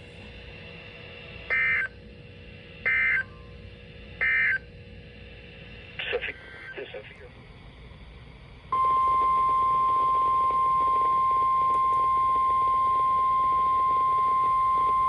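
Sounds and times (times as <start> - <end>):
steady warning alarm tone: 0.9 - 2.2, 2.8 - 3.3, 4.2 - 4.7, 8.7 - 15.0.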